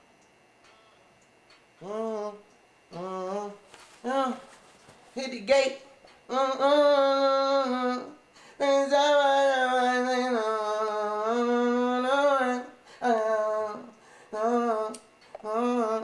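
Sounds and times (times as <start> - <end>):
person humming melody: 1.8 - 4.5, 6.3 - 16.0.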